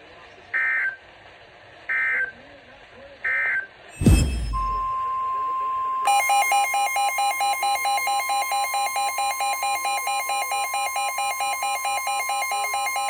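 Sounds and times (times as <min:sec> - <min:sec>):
warbling electronic alert tone: 0:04.0 - 0:05.2
steady alarm tone: 0:04.0 - 0:13.0.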